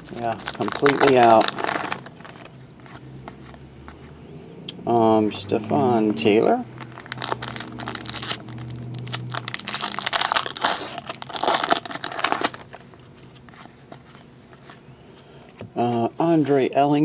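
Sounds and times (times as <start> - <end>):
plastic wrapper crinkling and tearing: 0.0 - 2.5, 6.8 - 13.5.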